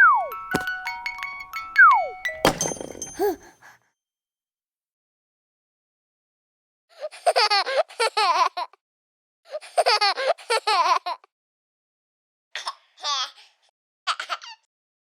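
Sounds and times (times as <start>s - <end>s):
baby giggling: 3.0s - 3.7s, 7.1s - 8.8s, 9.7s - 11.2s.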